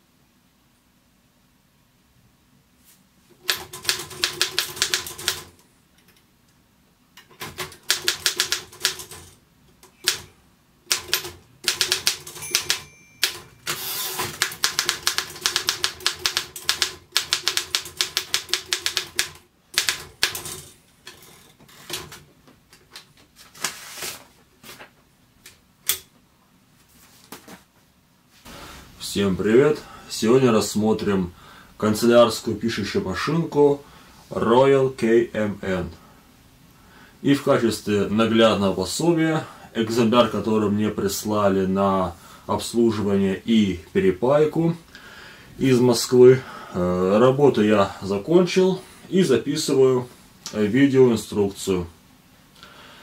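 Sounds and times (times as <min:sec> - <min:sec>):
typewriter keystroke clicks: 0:03.4 - 0:05.5, 0:07.2 - 0:10.3, 0:10.9 - 0:20.7.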